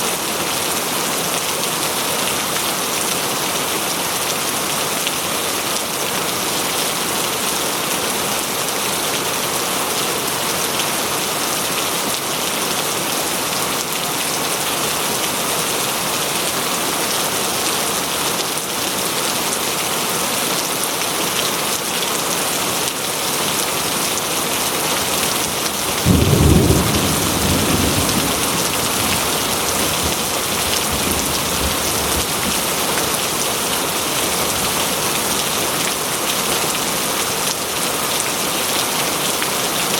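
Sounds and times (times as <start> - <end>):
steady rain in a forest: 0.0 - 39.9
low rumble of thunder: 25.9 - 32.6.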